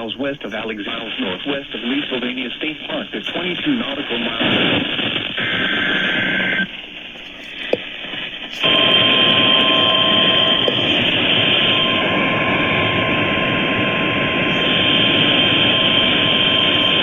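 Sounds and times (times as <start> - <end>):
loud radio static hiss: 0.0 - 17.0.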